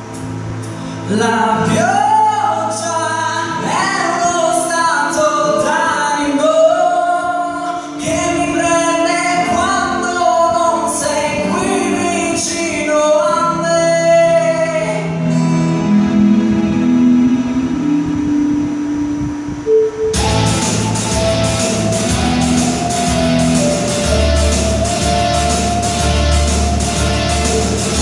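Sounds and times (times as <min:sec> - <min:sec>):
man singing a pop ballad: 0:01.1 - 0:15.4
instrumental accompaniment: 0:15.2 - 0:28.0.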